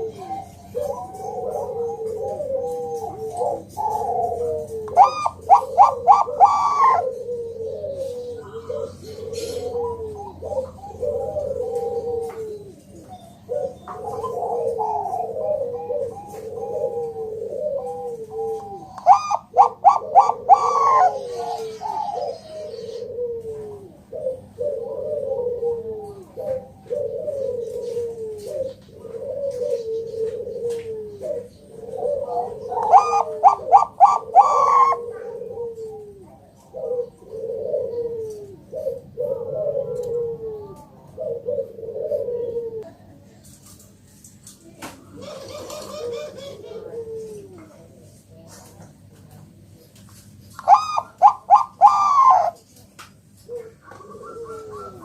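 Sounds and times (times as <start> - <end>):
doves cooing: 0.0 - 55.0.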